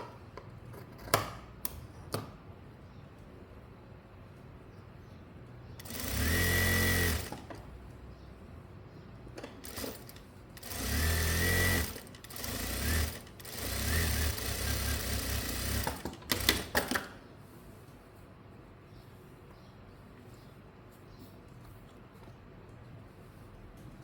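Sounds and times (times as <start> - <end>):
sewing machine stitching: 5.8 - 7.6, 9.4 - 17.1.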